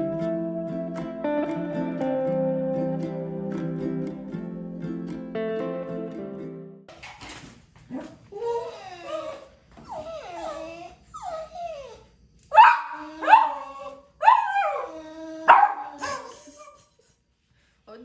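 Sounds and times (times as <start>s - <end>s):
dog yelping: 7.9s - 16.4s
dog whining: 7.9s - 17.0s.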